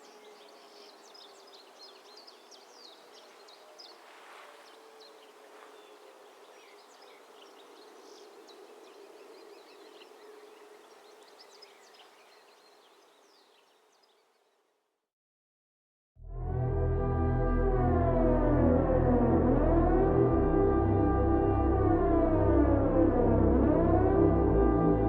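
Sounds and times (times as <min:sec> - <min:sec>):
small birds chirping: 0:00.0 - 0:14.6.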